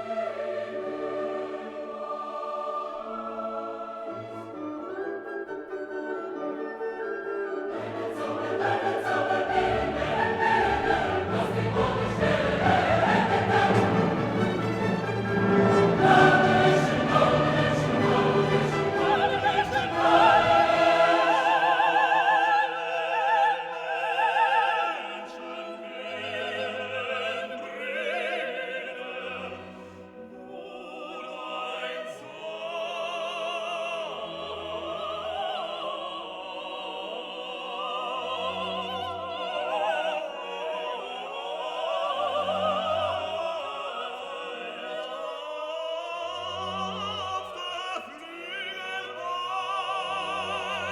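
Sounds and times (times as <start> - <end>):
operatic singing with orchestra: 0.0 - 50.9.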